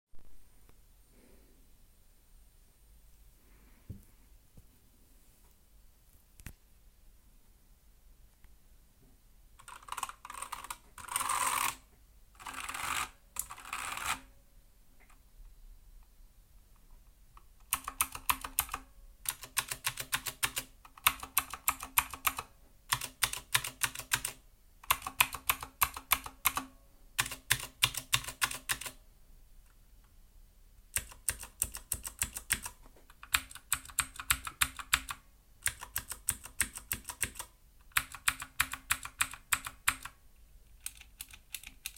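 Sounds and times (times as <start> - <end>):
mechanical keyboard typing: 9.6 - 11.8, 12.4 - 14.3, 17.6 - 29.0, 30.9 - 40.2, 40.8 - 41.9.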